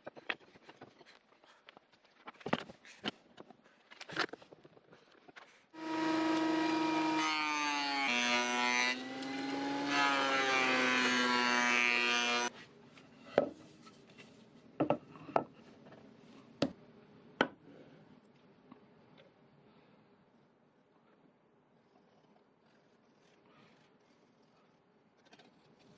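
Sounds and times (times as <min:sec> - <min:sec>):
power tool whining cutting wood: 0:05.8 - 0:12.5.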